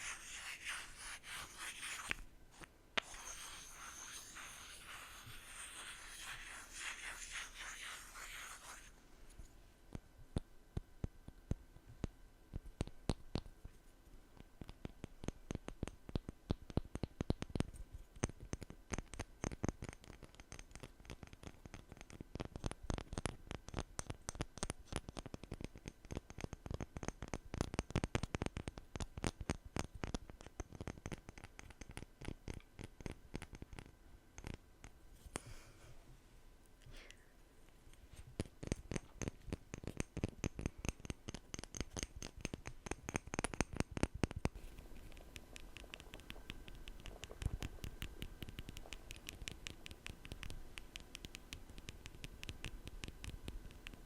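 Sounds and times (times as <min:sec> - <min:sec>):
sharp tapping and scratching: 0:00.0 - 0:08.9, 0:14.4 - 0:35.0, 0:37.9 - 0:54.0
soft rustle: 0:00.0 - 0:09.9, 0:34.4 - 0:39.5.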